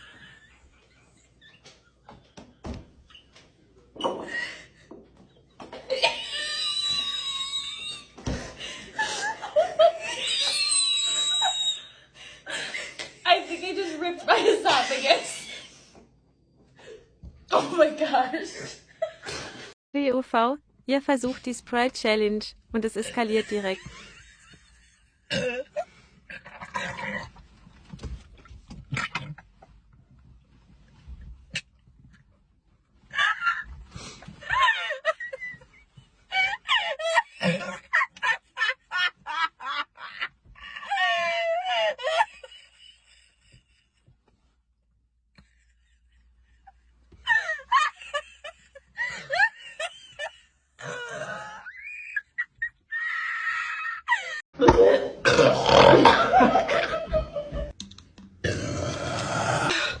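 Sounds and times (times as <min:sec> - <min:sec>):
high-pitched laughing and squealing: 0:09.8 - 0:12.0
person burping loudly: 0:54.6 - 0:56.9, 0:58.4 - 1:00.0.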